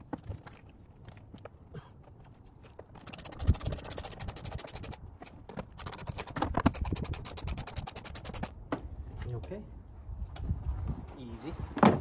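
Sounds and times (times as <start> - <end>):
ratchet wrench clicking: 5.8 - 8.5.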